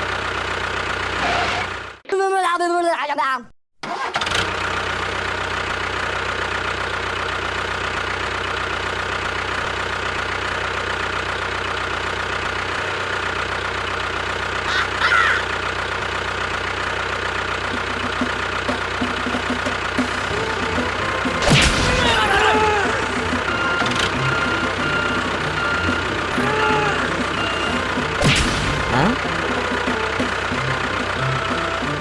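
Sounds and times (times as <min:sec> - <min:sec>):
motor running steadily: 0:15.6 - 0:32.0.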